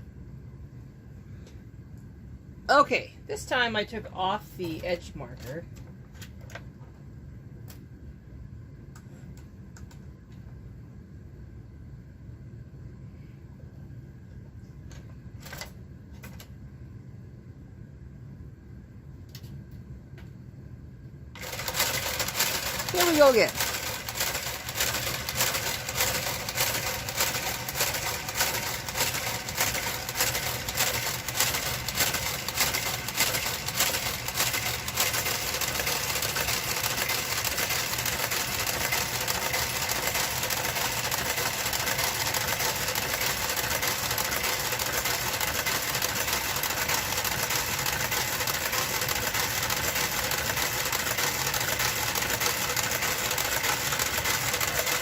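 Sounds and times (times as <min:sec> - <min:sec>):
mechanical whir with hum: 0:00.0 - 0:55.0
knitting machine clicking: 0:21.4 - 0:55.0.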